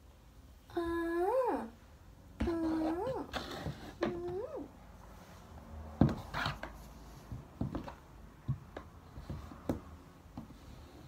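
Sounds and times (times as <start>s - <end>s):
irregular knocks and thumps: 5.9s - 6.3s, 7.3s - 10.6s.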